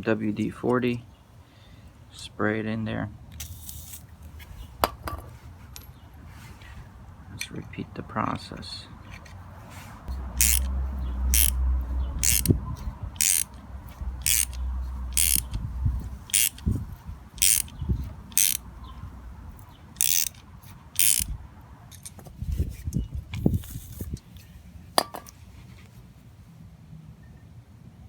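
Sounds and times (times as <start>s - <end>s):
ratchet wrench clicking: 10.3s - 11.6s, 12.2s - 12.6s, 13.2s - 13.6s, 14.2s - 16.8s, 17.4s - 18.6s, 20.0s - 22.2s.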